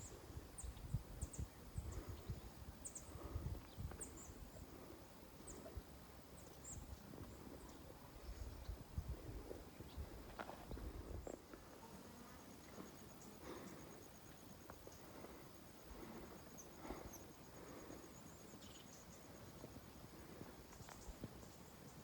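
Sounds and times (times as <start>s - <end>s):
small birds chirping: 0.0s - 11.5s, 12.3s - 22.0s.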